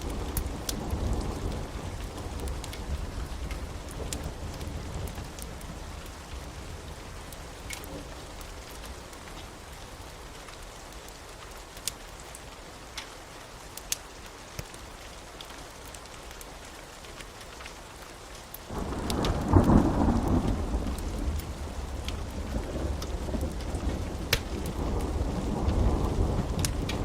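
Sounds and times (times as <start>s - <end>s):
low rumble of thunder: 0.0s - 9.7s, 18.7s - 27.0s
steady rain: 0.0s - 27.0s
sharp drip ticks: 23.0s - 25.9s.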